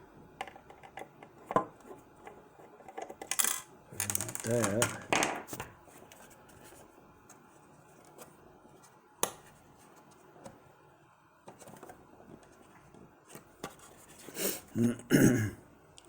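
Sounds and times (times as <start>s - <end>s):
plastic toy clicks: 3.2s - 5.1s.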